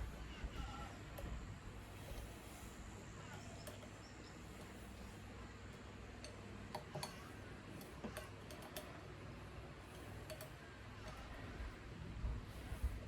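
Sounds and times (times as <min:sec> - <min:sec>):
steady low hum: 0:00.0 - 0:13.0
light clicks and taps of tools: 0:05.7 - 0:09.0, 0:09.9 - 0:11.3.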